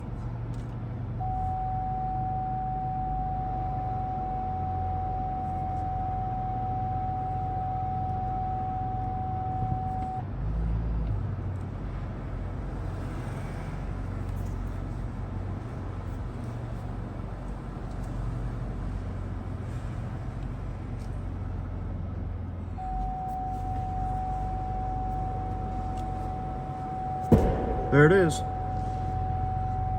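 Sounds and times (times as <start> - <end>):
car engine rumbling at low speed: 0.0 - 29.9
steady electronic tone: 23.1 - 29.9
short low thump: 27.2 - 29.0.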